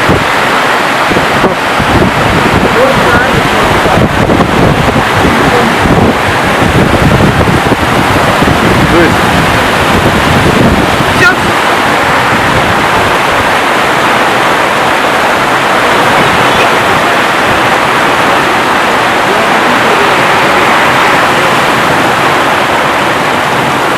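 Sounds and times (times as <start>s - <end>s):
heavy rain pouring: 0.0s - 23.9s.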